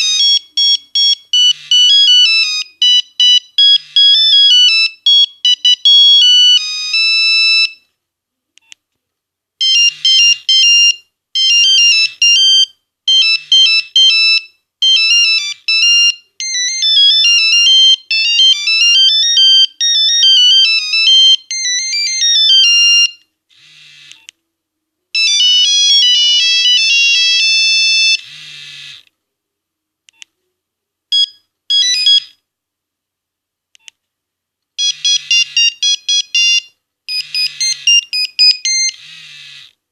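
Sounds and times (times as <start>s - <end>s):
monophonic phone ringtones: 0.0s - 7.8s, 9.6s - 23.2s, 25.2s - 29.0s, 31.1s - 32.4s, 34.8s - 39.7s.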